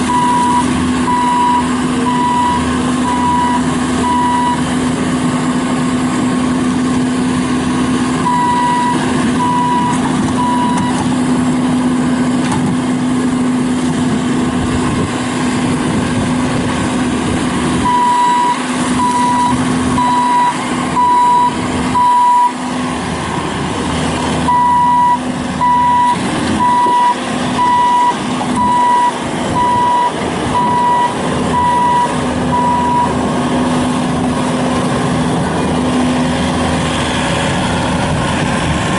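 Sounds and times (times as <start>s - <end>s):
diesel engine droning: 0.0s - 38.9s
backup alarm beeping: 0.1s - 4.6s, 8.2s - 11.0s, 17.8s - 22.6s, 24.5s - 33.2s.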